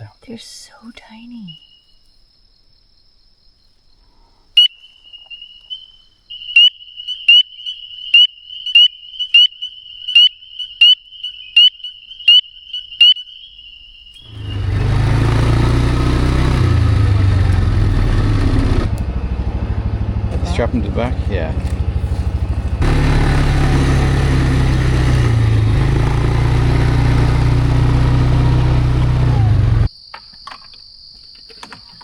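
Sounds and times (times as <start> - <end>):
frog calling: 1.1 - 2.1, 4.5 - 14.6
loud low rumble: 14.4 - 29.9.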